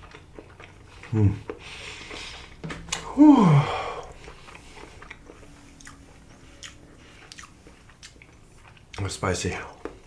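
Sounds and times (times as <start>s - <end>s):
soft chewing with mouth clicks: 0.0s - 3.1s, 3.9s - 10.0s
person exclaiming: 3.0s - 4.0s.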